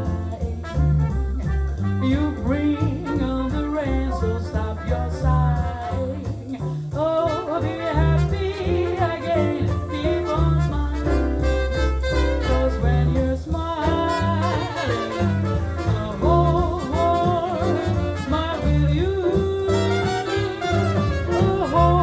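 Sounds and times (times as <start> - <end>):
swing jazz record playing: 0.0 - 22.0.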